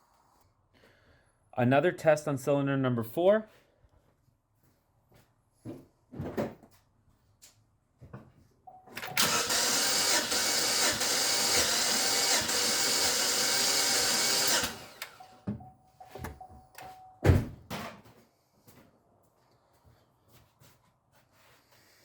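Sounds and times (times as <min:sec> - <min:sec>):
starter motor cranking engine: 0:08.9 - 0:15.4.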